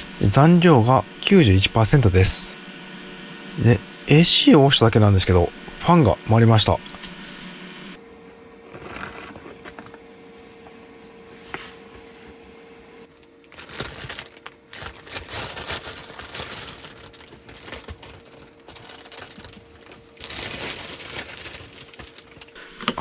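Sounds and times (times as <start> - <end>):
cooling fan hum: 0.0 - 23.0
packaging crinkling and rustling: 8.7 - 10.0, 13.1 - 22.6.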